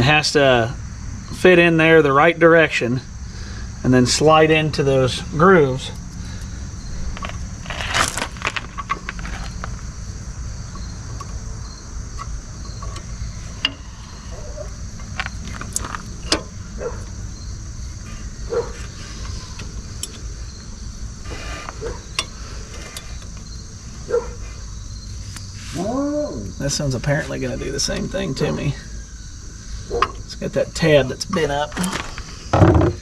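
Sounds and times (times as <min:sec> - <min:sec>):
insects chirring: 0:00.0 - 0:33.0
metallic clicks of brake parts: 0:12.1 - 0:13.9, 0:14.7 - 0:17.2, 0:18.8 - 0:20.3, 0:21.6 - 0:23.6.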